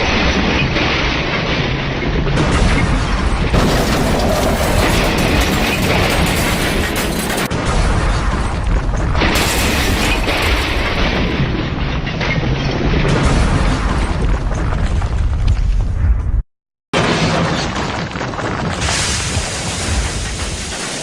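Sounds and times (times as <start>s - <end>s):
train crashing and booming: 0.0s - 16.1s, 17.0s - 21.0s.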